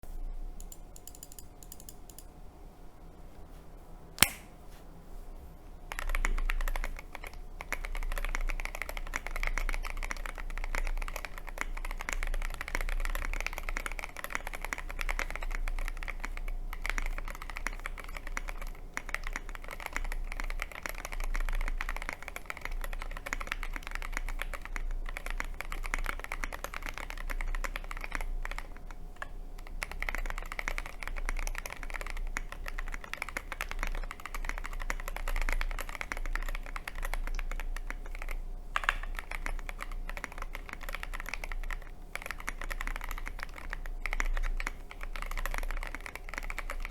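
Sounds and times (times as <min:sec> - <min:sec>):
mechanical keyboard typing: 0:00.6 - 0:02.3, 0:05.9 - 0:46.9
sharp click: 0:04.2 - 0:04.6.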